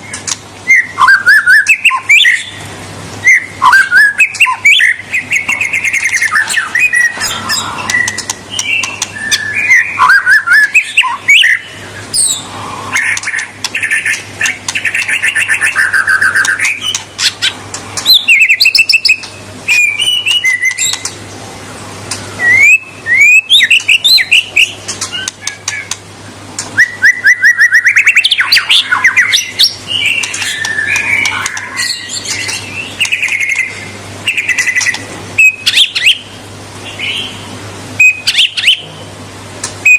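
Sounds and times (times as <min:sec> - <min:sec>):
songbird singing trills: 0:00.0 - 0:02.6, 0:03.2 - 0:21.2, 0:22.1 - 0:26.0, 0:26.8 - 0:39.1
bird clicking notes: 0:05.4 - 0:09.5, 0:13.0 - 0:18.2, 0:20.6 - 0:21.2, 0:24.9 - 0:26.0, 0:30.1 - 0:31.7.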